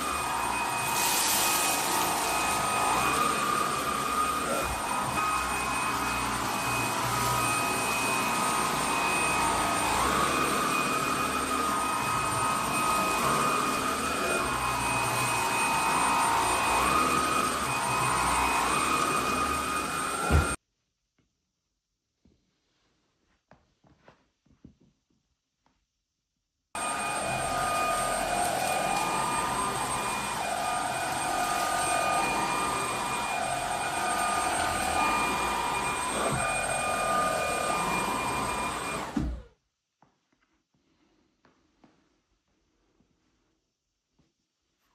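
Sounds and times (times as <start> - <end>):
vacuum cleaner whine: 0.0 - 20.6, 26.8 - 39.5.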